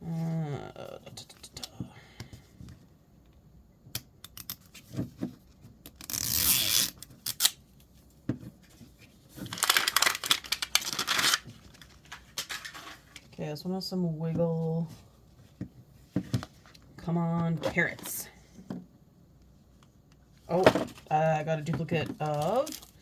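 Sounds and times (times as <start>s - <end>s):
plastic wrapping tearing: 5.9s - 7.6s, 9.4s - 13.2s.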